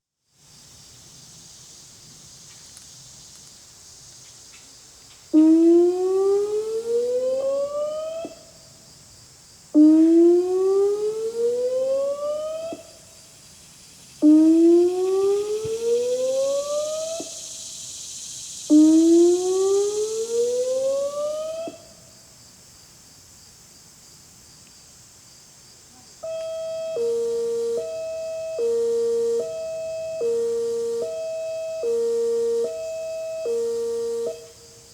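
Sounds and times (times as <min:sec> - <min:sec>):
electronic siren whoop: 0:05.4 - 0:08.4, 0:09.8 - 0:12.9, 0:14.2 - 0:17.4, 0:18.7 - 0:21.8, 0:26.3 - 0:34.6
hi-lo siren tone: 0:05.4 - 0:08.4, 0:09.8 - 0:12.9, 0:14.2 - 0:17.4, 0:18.7 - 0:21.9, 0:26.2 - 0:34.7.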